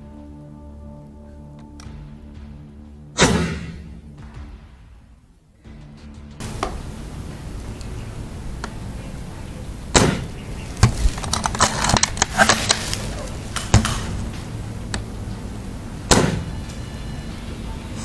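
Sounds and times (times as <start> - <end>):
airsoft gunshots: 3.2 - 5.6, 6.4 - 16.8
cracks clicks and knocks: 9.9 - 15.4.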